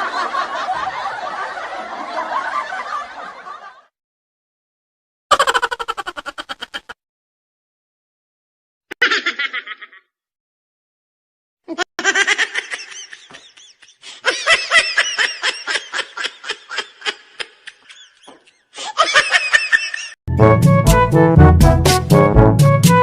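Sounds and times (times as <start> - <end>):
people laughing: 0.0 - 3.9, 5.3 - 7.0, 8.9 - 10.0, 11.7 - 20.2
quick high-pitched laughing: 5.3 - 7.0.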